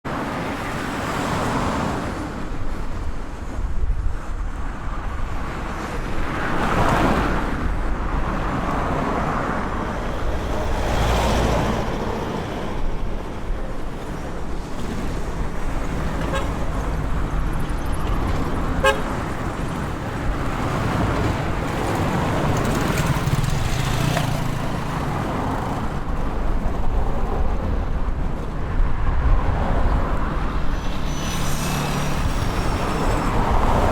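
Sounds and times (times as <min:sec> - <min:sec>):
cars passing: 0:00.1 - 0:33.9
traffic rumble: 0:00.1 - 0:33.9
car horn tooting: 0:16.2 - 0:16.8, 0:18.8 - 0:19.4.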